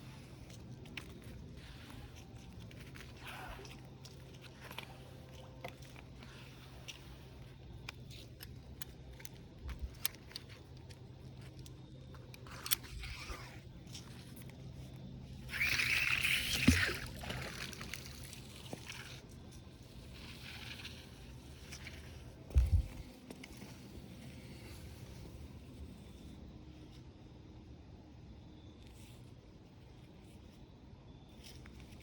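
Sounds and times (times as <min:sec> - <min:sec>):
water sloshing and splashing: 0:00.0 - 0:25.4.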